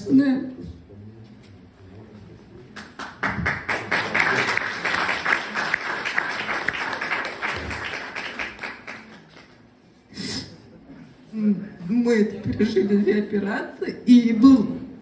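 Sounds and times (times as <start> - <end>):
audience applauding: 2.8 - 9.6.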